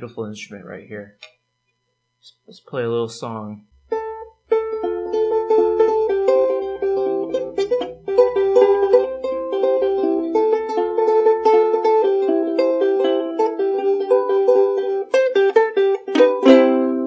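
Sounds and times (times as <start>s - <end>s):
plucked string instrument melody: 3.8s - 17.0s.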